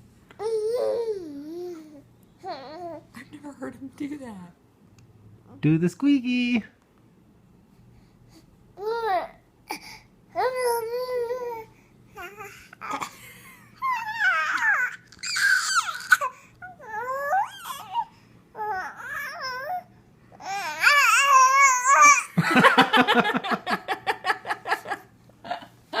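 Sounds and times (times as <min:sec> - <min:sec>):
baby squealing and babbling: 0:13.8 - 0:19.8, 0:20.4 - 0:22.3.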